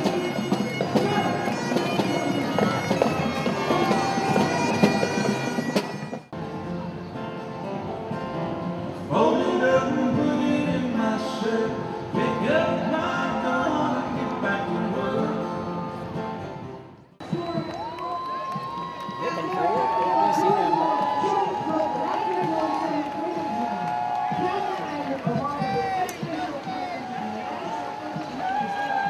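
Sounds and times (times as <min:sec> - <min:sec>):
bagpipe music: 0:00.0 - 0:06.4
music: 0:00.0 - 0:22.6.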